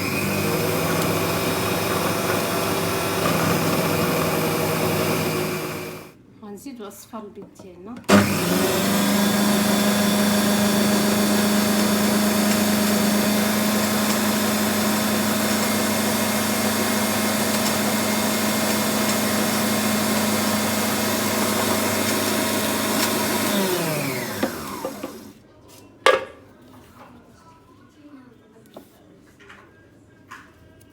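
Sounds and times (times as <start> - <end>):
kitchen mixer motor running: 0.0 - 6.1, 8.1 - 25.4.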